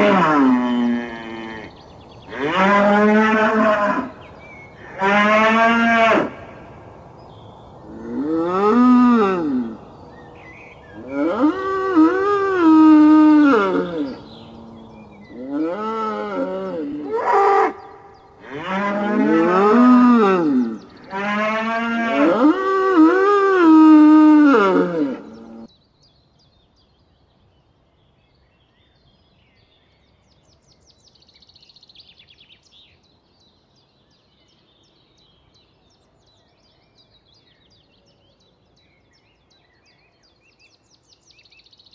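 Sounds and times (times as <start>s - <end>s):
cattle mooing: 11.0s - 17.8s, 18.4s - 25.7s.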